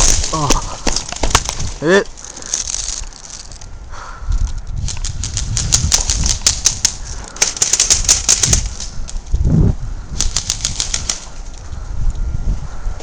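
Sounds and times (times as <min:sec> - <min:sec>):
low rumbling: 0:00.0 - 0:10.2.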